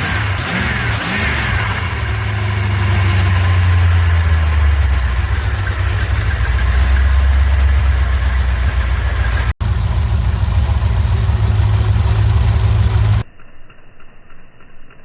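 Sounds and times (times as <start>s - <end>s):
car engine idling: 0.0s - 13.3s.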